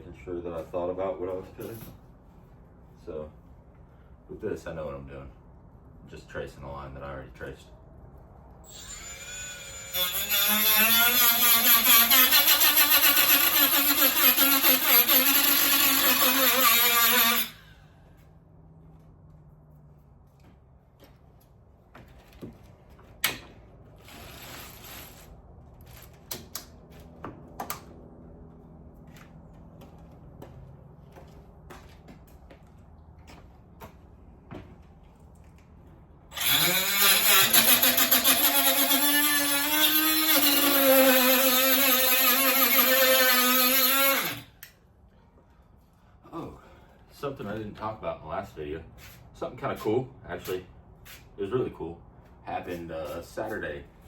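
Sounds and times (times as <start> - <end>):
power cutting tool motor: 8.7 - 17.6, 36.3 - 44.5.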